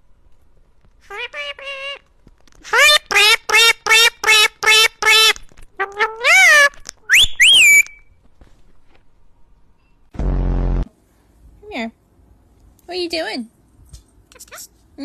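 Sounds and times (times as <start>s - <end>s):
parrot calling: 2.7s - 8.0s
parrot whistled squawks: 6.2s - 8.1s.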